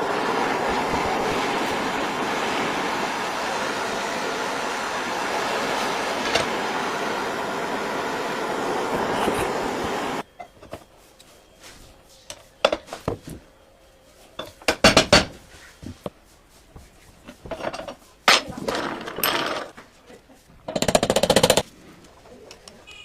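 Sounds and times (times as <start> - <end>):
knocks and clicks on metal parts: 20.7 - 21.6.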